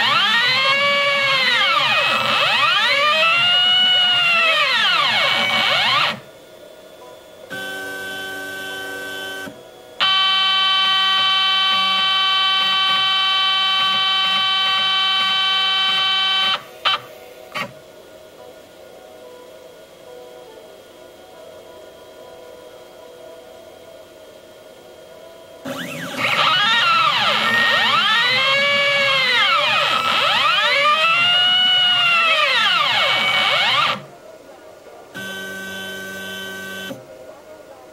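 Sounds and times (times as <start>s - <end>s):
stepper motors whining: 25.7s - 34.1s.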